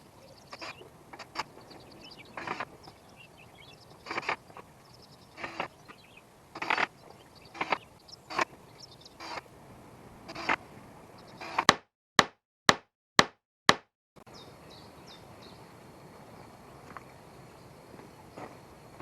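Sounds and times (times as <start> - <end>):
birds chirping: 0.0 - 9.5, 10.2 - 11.7
knocks on wood: 11.7 - 13.9.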